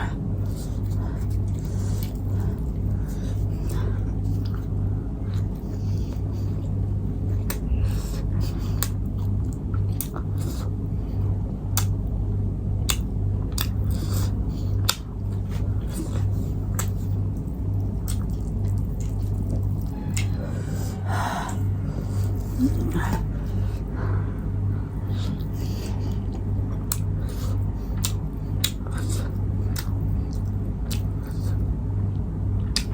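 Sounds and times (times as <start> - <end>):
low hum: 0.0 - 32.9
chewing mouth clicks: 7.3 - 10.7, 12.8 - 20.4, 25.2 - 31.6.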